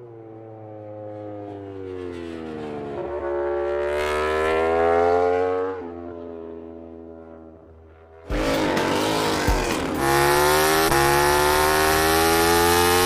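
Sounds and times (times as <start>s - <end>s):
racing motorcycle engine revving: 2.7s - 6.6s, 8.2s - 13.0s.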